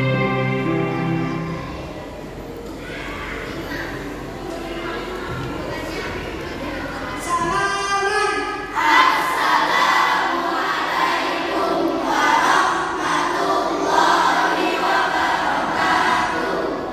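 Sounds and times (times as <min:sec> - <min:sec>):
children singing together: 0:00.0 - 0:02.4, 0:08.7 - 0:16.9
held pitched tone: 0:00.0 - 0:02.4.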